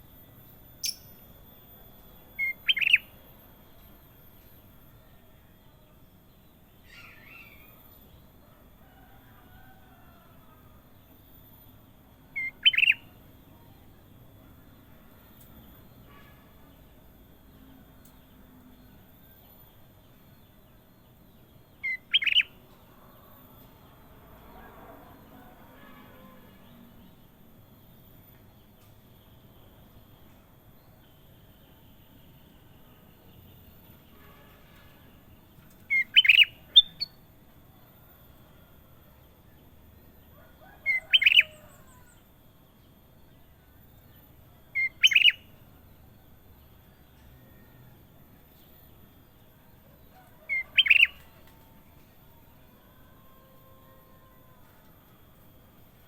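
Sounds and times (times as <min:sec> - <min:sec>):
bulbul calling: 0:02.4 - 0:03.1, 0:12.4 - 0:13.1, 0:21.8 - 0:22.5, 0:35.9 - 0:37.0, 0:40.9 - 0:41.7, 0:44.8 - 0:45.4, 0:50.4 - 0:51.2.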